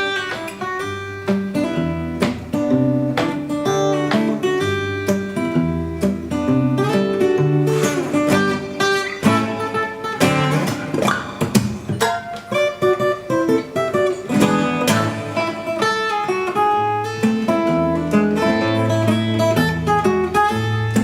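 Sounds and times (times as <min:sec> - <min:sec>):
acoustic guitar plucked and strummed: 0:00.0 - 0:21.0.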